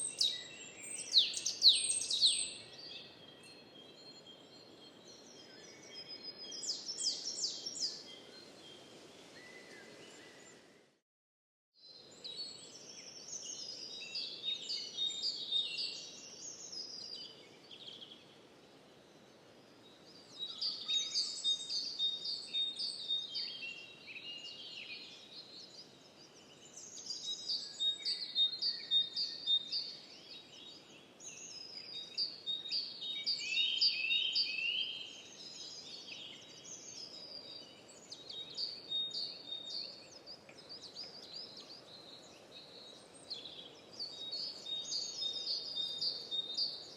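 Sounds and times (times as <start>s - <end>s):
songbirds chirping: 0.0s - 11.0s, 11.8s - 46.9s
faint steady hiss: 6.5s - 11.0s.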